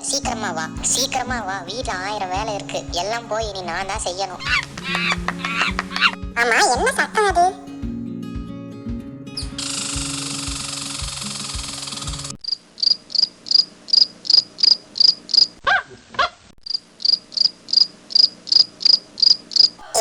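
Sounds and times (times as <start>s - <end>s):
background music: 0.0s - 12.4s
insect chirping: 0.6s - 7.7s, 9.4s - 15.6s, 16.6s - 20.0s
falling squeaks: 4.4s - 6.8s.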